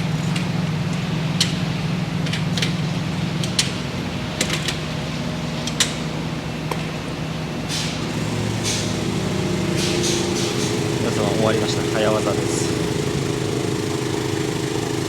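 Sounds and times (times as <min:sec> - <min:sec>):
low mechanical hum: 0:00.0 - 0:15.0
air hiss: 0:07.7 - 0:15.0.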